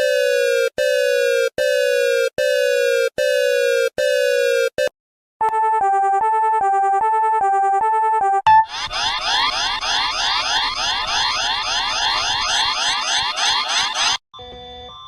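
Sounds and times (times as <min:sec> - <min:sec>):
falling alert tone: 0:08.5 - 0:14.2
two-pitch alert tone: 0:08.5 - 0:14.2.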